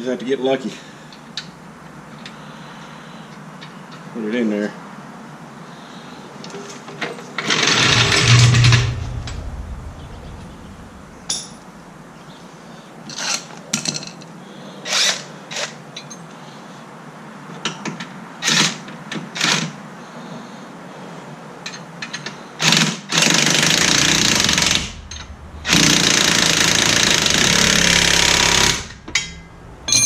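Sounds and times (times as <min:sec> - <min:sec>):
power tool running: 0:07.4 - 0:09.9, 0:23.1 - 0:29.5.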